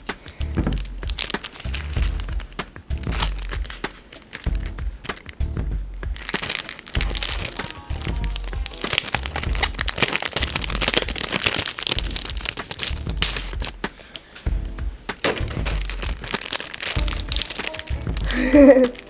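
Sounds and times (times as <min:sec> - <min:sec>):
plastic packaging crinkling: 0:00.0 - 0:14.5, 0:15.2 - 0:19.0
background music with pulsing bass: 0:00.4 - 0:03.8, 0:04.5 - 0:06.2, 0:07.0 - 0:11.2, 0:13.0 - 0:13.9, 0:14.5 - 0:16.3, 0:17.0 - 0:19.0.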